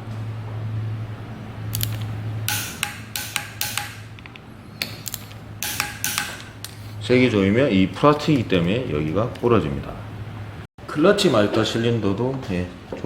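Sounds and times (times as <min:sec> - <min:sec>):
metal hand tools clicking: 0:01.7 - 0:06.8.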